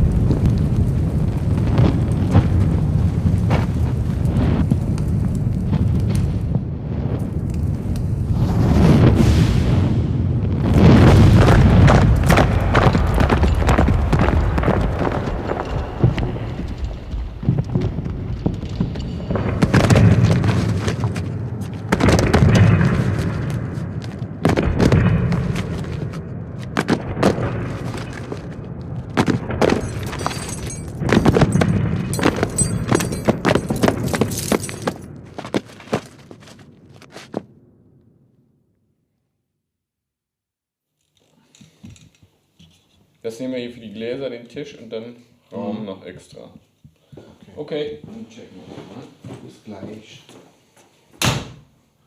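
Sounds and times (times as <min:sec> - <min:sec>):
heavy thuds and knocks: 0:29.2 - 0:36.6.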